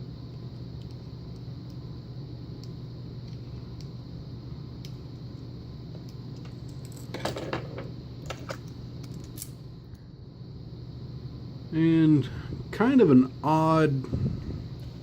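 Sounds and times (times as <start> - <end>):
metallic clicks of lock parts: 8.3 - 9.6.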